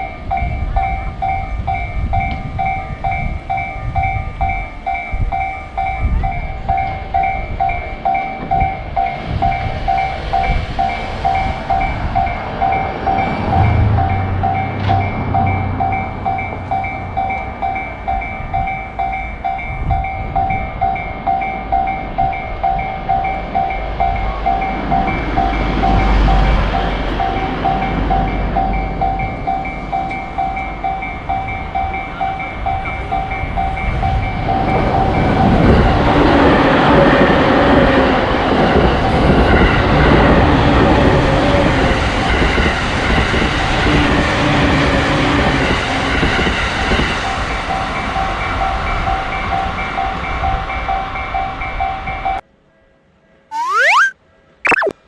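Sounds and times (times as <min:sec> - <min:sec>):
train rushing past: 0:05.4 - 0:19.2.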